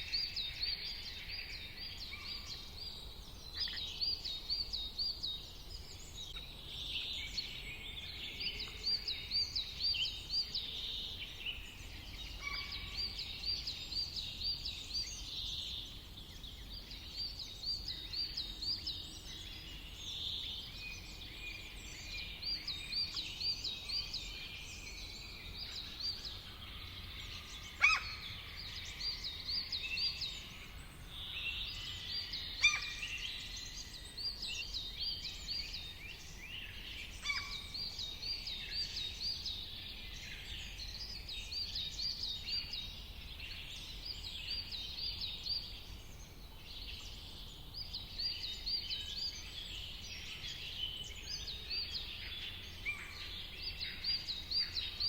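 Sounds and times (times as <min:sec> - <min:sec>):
sharp down-sweeping bird calls: 0:27.6 - 0:28.4, 0:32.5 - 0:33.5.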